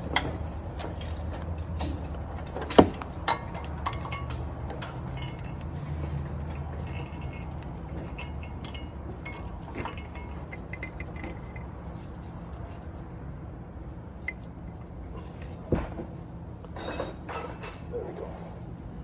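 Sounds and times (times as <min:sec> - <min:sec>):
metal parts clinking: 0:00.0 - 0:12.9.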